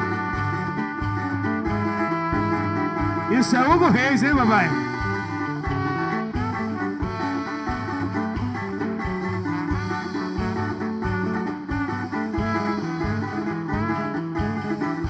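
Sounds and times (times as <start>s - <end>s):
electric guitar lead with bending notes: 0.0s - 15.0s
steady drum beat: 0.0s - 15.0s
bass line: 2.7s - 5.3s.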